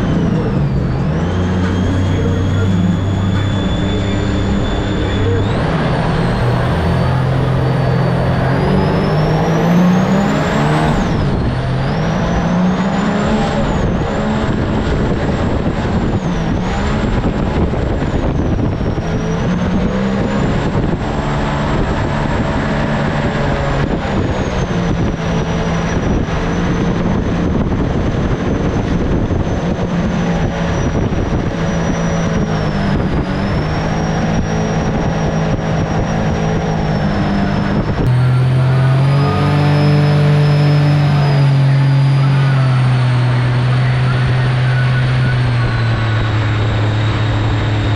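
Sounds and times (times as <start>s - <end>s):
boat engine running: 0.0s - 47.9s
thin high whine: 1.4s - 11.6s.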